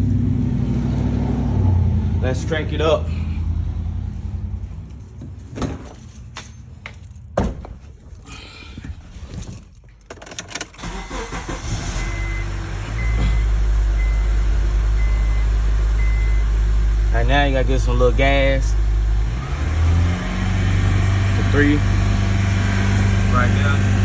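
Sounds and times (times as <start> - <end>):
car engine starting and idling: 10.1 - 24.0.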